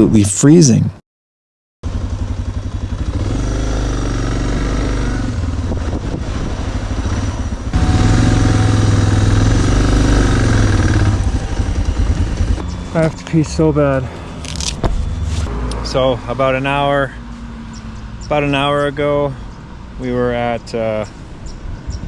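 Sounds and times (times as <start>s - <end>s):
motorcycle engine running: 1.8s - 15.5s.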